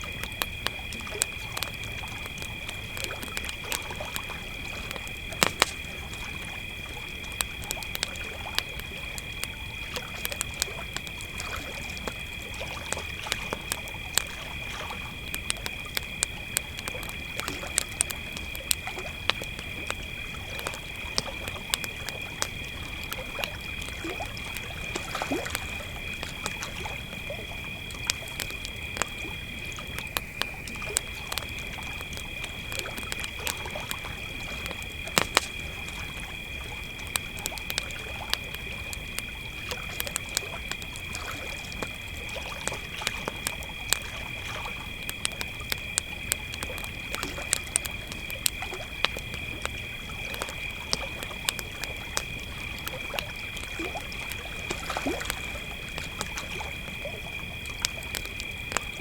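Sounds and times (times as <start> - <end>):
campfire crackling and popping: 0.0 - 59.0
crickets trilling: 0.0 - 59.0.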